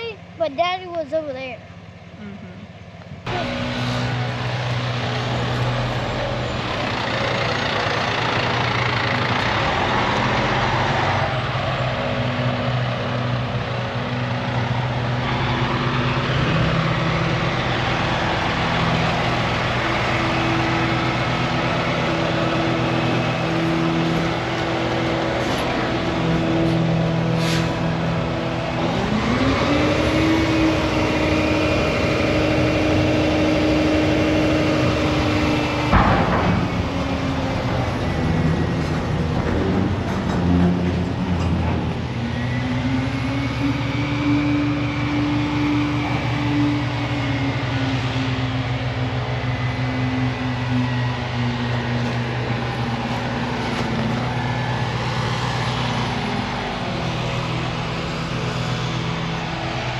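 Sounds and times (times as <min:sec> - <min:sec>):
heavy machine engine revving: 0:02.2 - 0:59.9.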